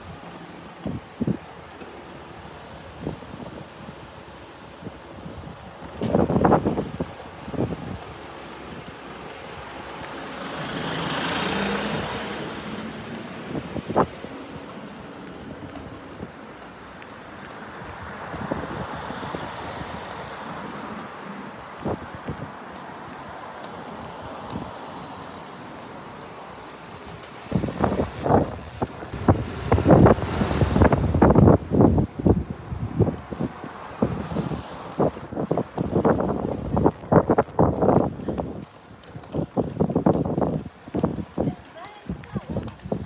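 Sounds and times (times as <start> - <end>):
steady traffic noise: 0.0 - 43.0
vehicle passing close by: 9.1 - 14.5, 17.8 - 37.4.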